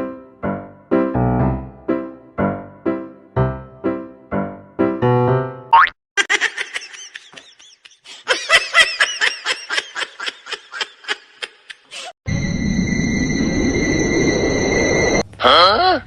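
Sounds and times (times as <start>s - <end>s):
piano notes: 0.0s - 5.8s
high-pitched giggling laughter: 6.2s - 12.0s.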